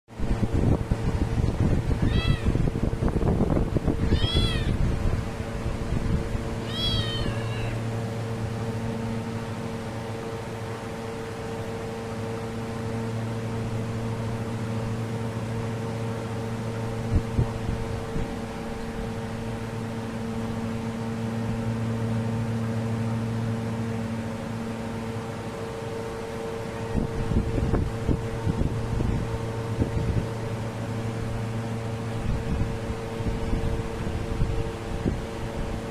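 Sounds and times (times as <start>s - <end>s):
low rumbling noise: 0.1s - 22.1s
steady mechanical hum: 0.1s - 35.9s
cat meowing: 2.0s - 2.6s, 4.0s - 4.8s, 6.6s - 7.8s.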